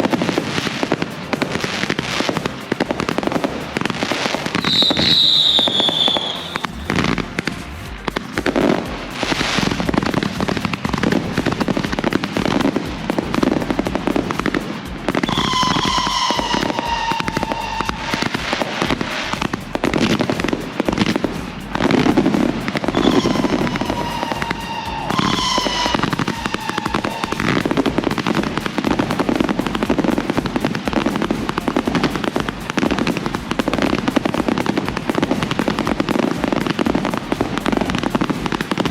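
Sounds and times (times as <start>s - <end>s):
fireworks crackling and banging: 0.0s - 38.9s
falling firework whistle: 0.1s - 12.8s, 14.1s - 21.2s, 21.8s - 38.9s.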